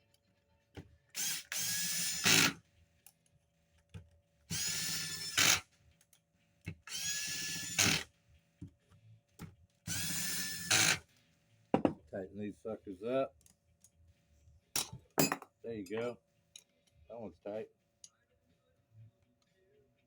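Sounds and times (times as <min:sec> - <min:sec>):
cordless drill whining: 0:01.2 - 0:02.6, 0:04.5 - 0:05.6, 0:06.9 - 0:08.1, 0:09.9 - 0:11.0.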